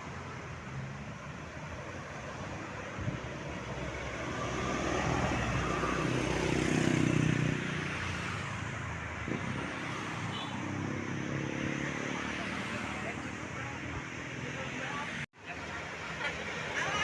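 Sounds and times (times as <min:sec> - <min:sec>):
traffic noise: 0:00.0 - 0:17.0
vehicle passing: 0:02.0 - 0:15.2.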